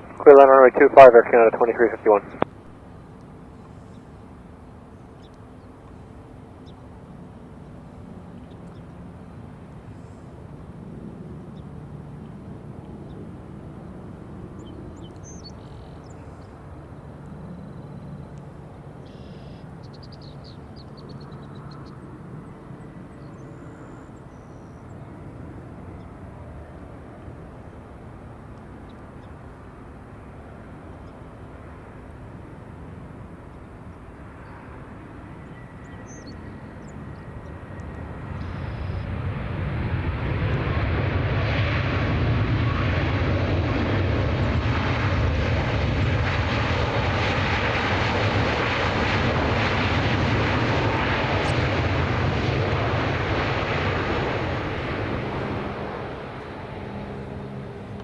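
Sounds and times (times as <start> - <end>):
jet engines roaring: 0.0 - 3.1, 34.6 - 58.0.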